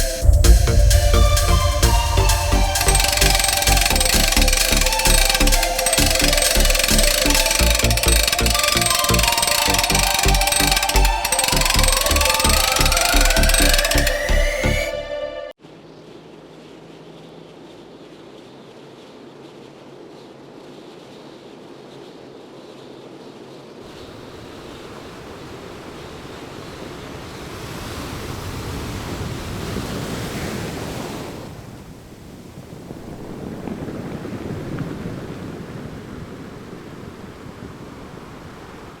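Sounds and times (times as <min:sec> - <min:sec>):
sea surf washing in: 0:23.9 - 0:39.0.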